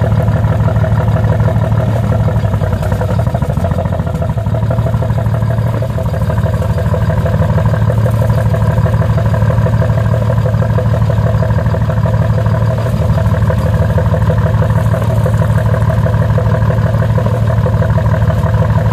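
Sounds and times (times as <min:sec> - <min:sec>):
diesel engine running: 0:00.0 - 0:18.9.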